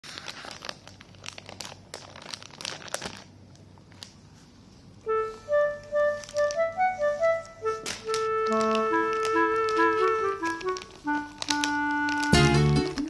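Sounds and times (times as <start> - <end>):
plastic bag crinkling: 0.0 - 13.0
reedy wind instrument tune: 5.0 - 13.0.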